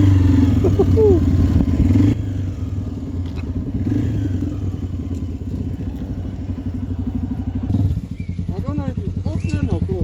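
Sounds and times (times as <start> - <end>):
motorcycle engine putter: 3.1 - 8.4.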